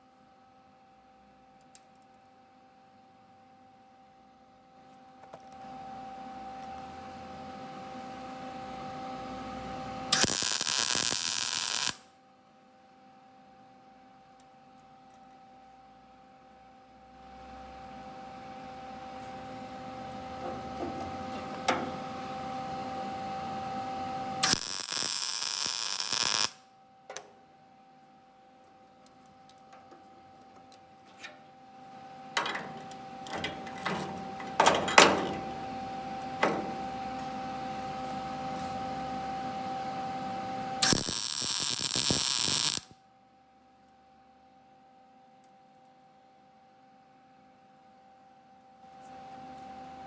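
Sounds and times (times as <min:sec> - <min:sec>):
welding crackling bursts: 0:10.2 - 0:12.0, 0:24.4 - 0:26.6, 0:40.8 - 0:42.9
clicks and metal taps: 0:32.4 - 0:35.4, 0:36.4 - 0:36.7.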